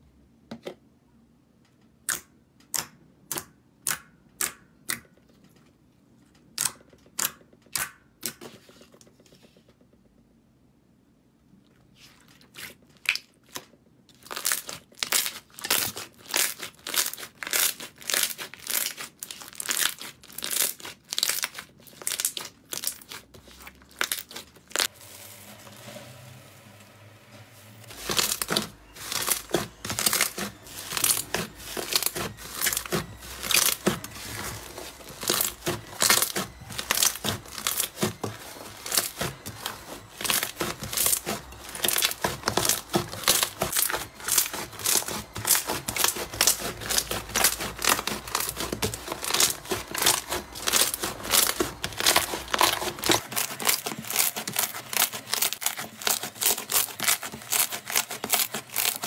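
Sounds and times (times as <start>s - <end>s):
crunchy slime crackling: 12.5s - 25.0s, 27.9s - 59.0s.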